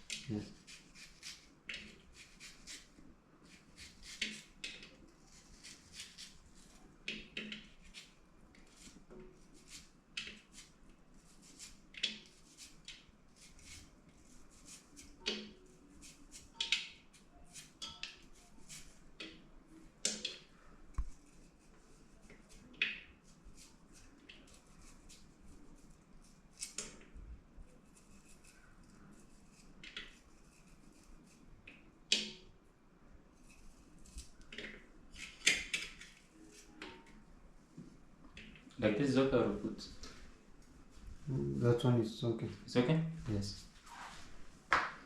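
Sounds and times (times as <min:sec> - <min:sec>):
knife cutting vegetables: 0:00.0 - 0:08.1.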